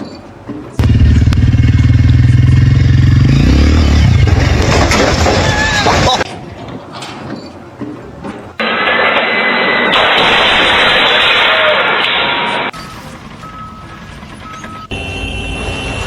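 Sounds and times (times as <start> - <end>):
loud engine pulsing: 0.8 - 6.2.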